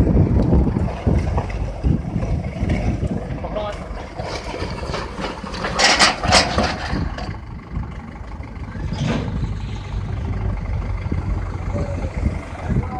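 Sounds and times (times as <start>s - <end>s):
tractor engine rumbling: 0.0s - 12.9s.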